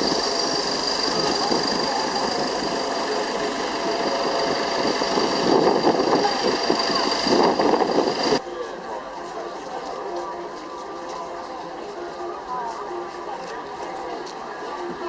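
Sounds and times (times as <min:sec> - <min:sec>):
aircraft engine idling: 0:00.0 - 0:08.4
murmur of crowd voices: 0:00.0 - 0:15.0.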